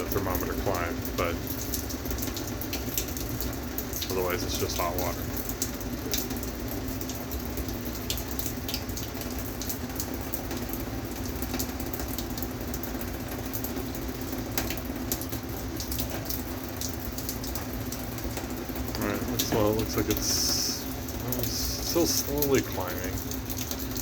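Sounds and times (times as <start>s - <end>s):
water running hiss: 4.0s - 5.3s, 18.9s - 24.0s.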